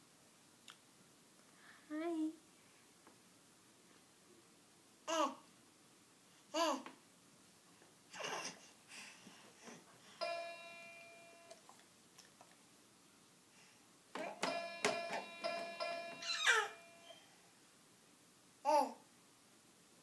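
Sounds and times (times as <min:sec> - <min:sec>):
musical toy notes: 0:10.2 - 0:11.6, 0:14.2 - 0:17.2
baby squealing: 0:16.2 - 0:17.2.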